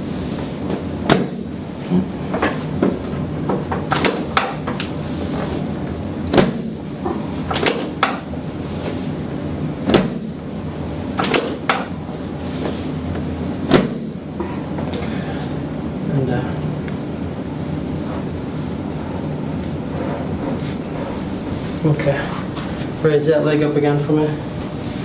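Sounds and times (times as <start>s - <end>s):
steady low hum: 0.0s - 25.0s
sharp clicks and knocks: 2.4s - 4.9s, 11.2s - 11.9s.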